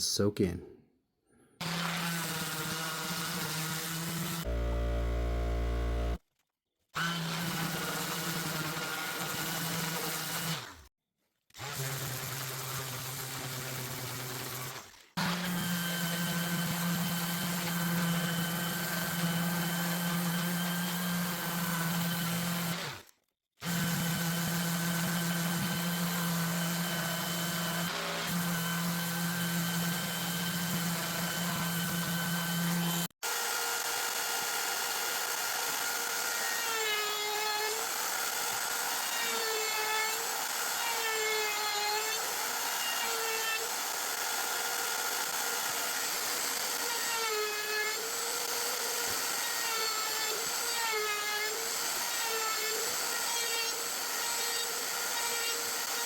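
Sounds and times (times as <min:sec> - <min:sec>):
higher-pitched tool cutting wood: 0:01.6 - 0:06.2, 0:13.8 - 0:56.0
power tool motor running: 0:01.6 - 0:06.2, 0:15.2 - 0:36.4.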